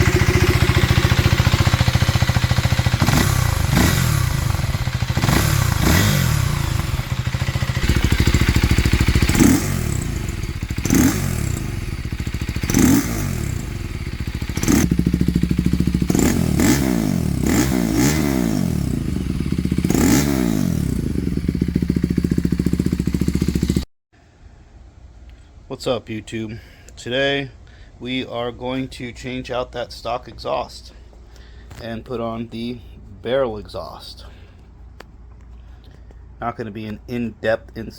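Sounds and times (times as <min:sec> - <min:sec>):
motorcycle engine revving: 0:00.0 - 0:23.9.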